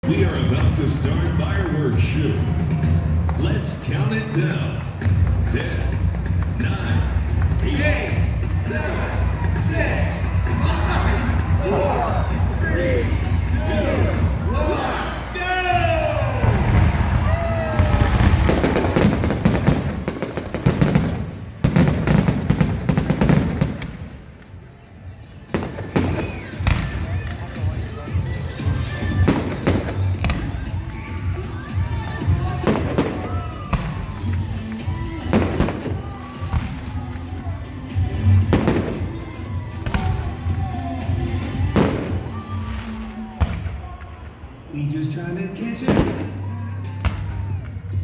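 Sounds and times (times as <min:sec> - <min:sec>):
fireworks bangs and crackles: 0:00.0 - 0:48.0
music playing: 0:00.0 - 0:48.0
fireworks deep booms: 0:15.7 - 0:24.5, 0:25.5 - 0:44.6, 0:45.8 - 0:48.0.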